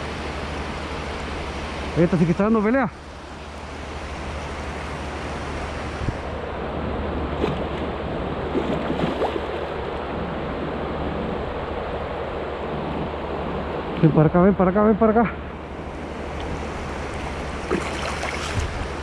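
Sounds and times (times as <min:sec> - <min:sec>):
flowing river water: 0:00.0 - 0:14.0, 0:15.4 - 0:19.0
wind on microphone: 0:05.7 - 0:14.0, 0:15.8 - 0:19.0.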